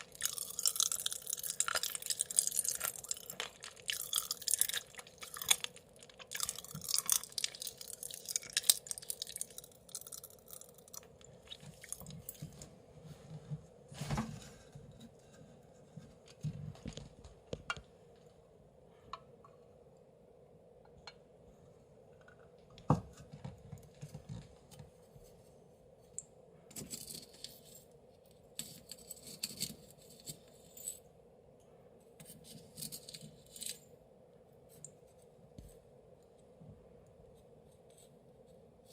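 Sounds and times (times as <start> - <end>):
chewing popping candy: 0.0 - 12.4
dense candy crackling: 0.0 - 12.5.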